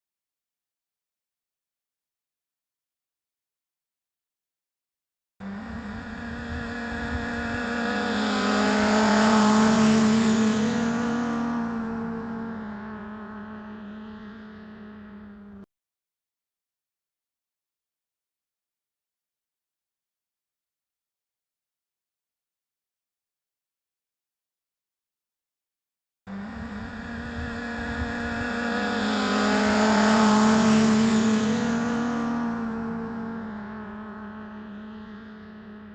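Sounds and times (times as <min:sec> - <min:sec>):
motorcycle passing by: 0:05.4 - 0:15.6, 0:26.3 - 0:35.9.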